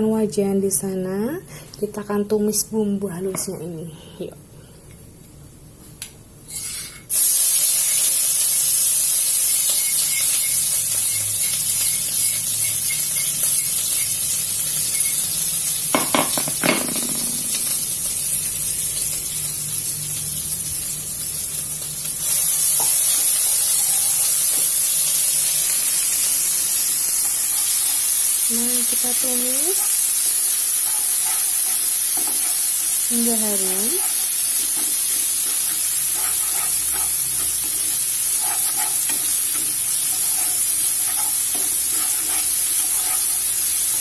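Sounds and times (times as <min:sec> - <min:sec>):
paste sizzling in hot oil: 0:06.5 - 0:44.0
knocks of stirring in wok: 0:29.0 - 0:32.8, 0:33.8 - 0:44.0.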